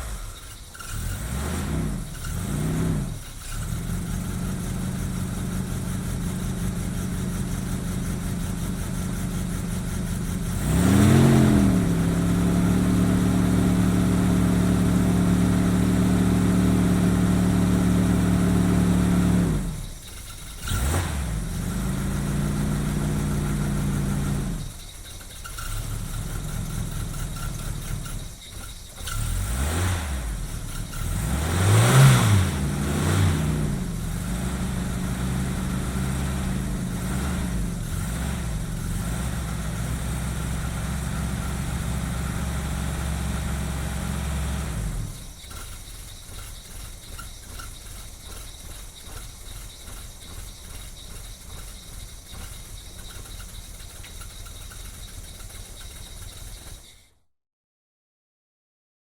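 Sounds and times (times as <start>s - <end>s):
car engine idling and revving: 0.0s - 57.1s.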